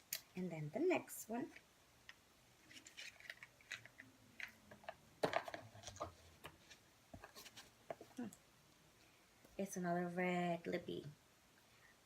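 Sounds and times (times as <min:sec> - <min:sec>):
packaging clicks and rustles: 0:02.6 - 0:06.6.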